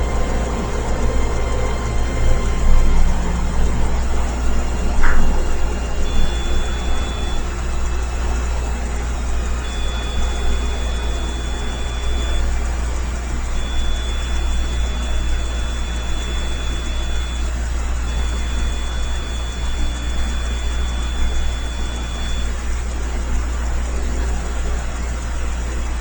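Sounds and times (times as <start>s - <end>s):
low machine hum with hiss: 0.0s - 26.0s
thin high whine: 0.0s - 26.0s.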